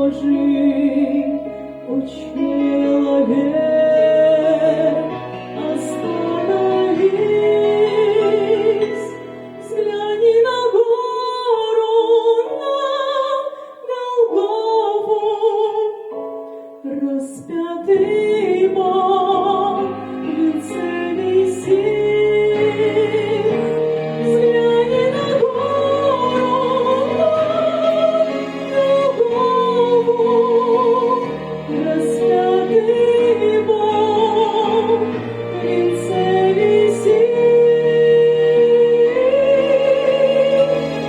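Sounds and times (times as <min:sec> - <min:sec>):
person singing with vibrato: 0:00.0 - 0:41.0
sustained instrumental accompaniment: 0:18.1 - 0:41.0.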